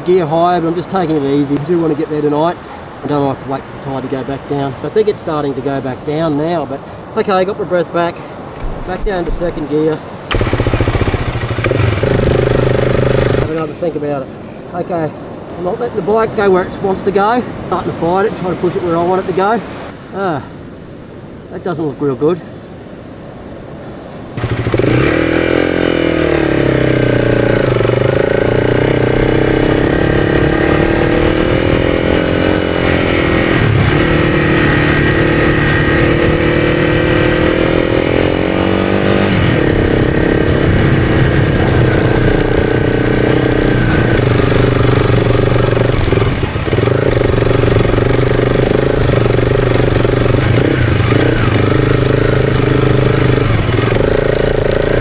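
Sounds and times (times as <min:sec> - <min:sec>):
motorcycle engine revving hard: 0:10.3 - 0:13.9, 0:24.3 - 0:55.0.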